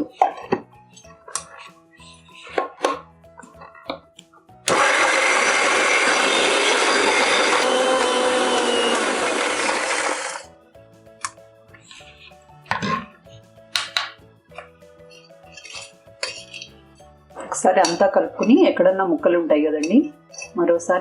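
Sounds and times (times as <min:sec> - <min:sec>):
mixer grinder grinding: 0:04.6 - 0:10.5.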